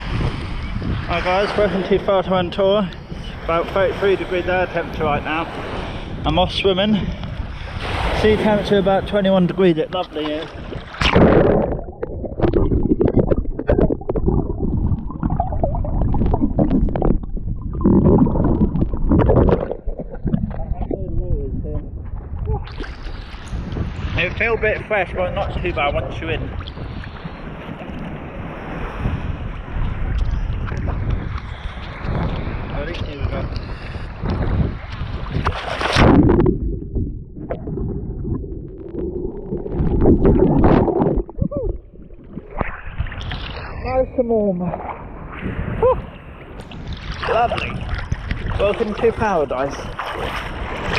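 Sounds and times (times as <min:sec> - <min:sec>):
seawater sloshing and gurgling: 0:00.0 - 0:50.9
muffled underwater sound: 0:10.1 - 0:28.1, 0:36.0 - 0:46.5
loud splash into water: 0:10.8 - 0:20.6, 0:35.4 - 0:36.8
small splashes: 0:46.6 - 0:50.9.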